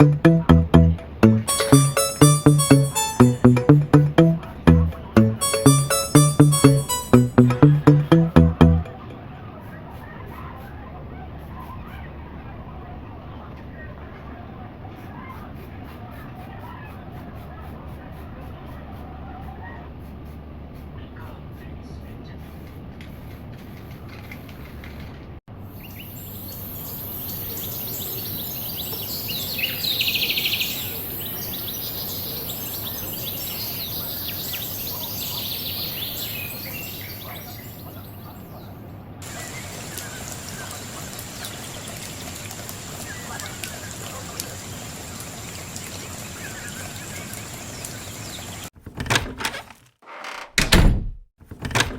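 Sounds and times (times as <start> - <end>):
steady outdoor hiss: 25.6 - 38.3, 39.2 - 48.7
small birds chirping: 25.8 - 42.1.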